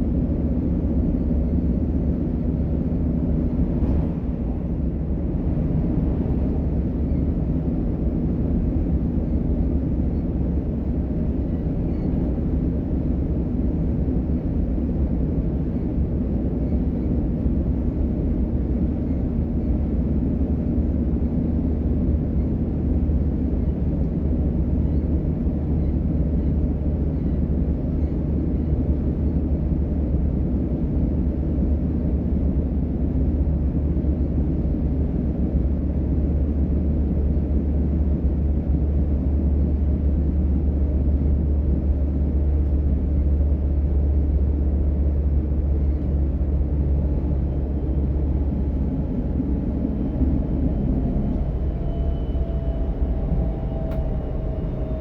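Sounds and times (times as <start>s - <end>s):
train wheels rumbling on rail: 0.0s - 55.0s
faint steady tones: 46.0s - 55.0s.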